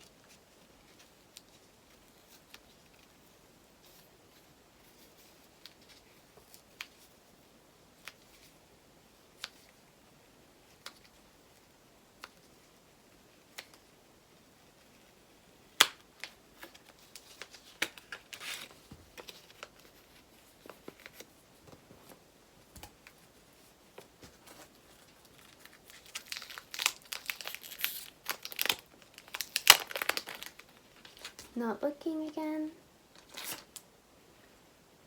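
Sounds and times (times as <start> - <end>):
wrapper rustling and clicking: 14.8 - 31.6, 33.1 - 33.9
wrapper crinkling and tearing: 24.5 - 31.5, 33.1 - 33.8.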